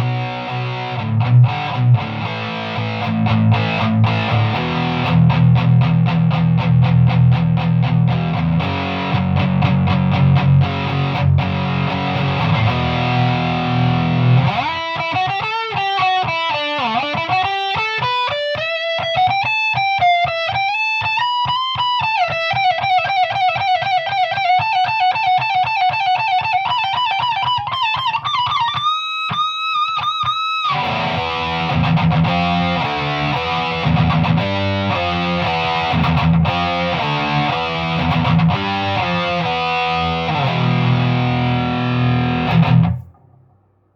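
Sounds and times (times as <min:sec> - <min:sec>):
heavy distorted guitar chords: 0:00.0 - 0:20.6, 0:30.7 - 0:43.5
distorted electric guitar lead: 0:00.0 - 0:43.5.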